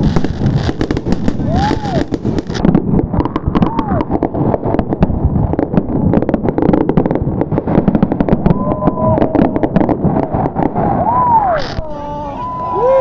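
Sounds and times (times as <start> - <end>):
fireworks bangs and crackles: 0.0 - 13.0
crowd shouting: 11.9 - 13.0.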